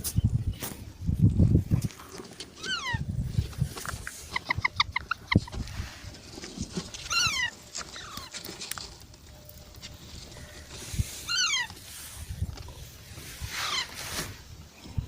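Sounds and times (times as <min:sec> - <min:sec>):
parrot squawking: 0:02.6 - 0:03.0, 0:07.1 - 0:08.3, 0:11.2 - 0:11.8, 0:13.6 - 0:14.0.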